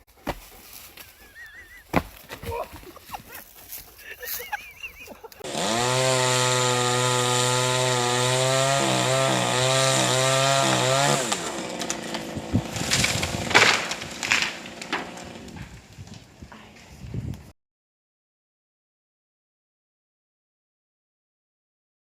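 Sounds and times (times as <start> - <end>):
chainsaw running at high revs: 5.4 - 15.5
sharp cracks and knocks: 10.7 - 16.3.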